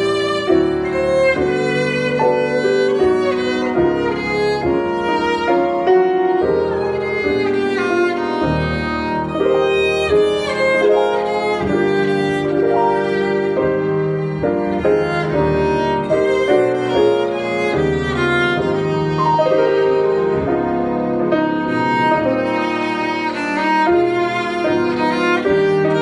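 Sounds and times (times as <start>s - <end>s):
piano accompaniment: 0.0s - 26.0s
violin melody: 0.0s - 26.0s.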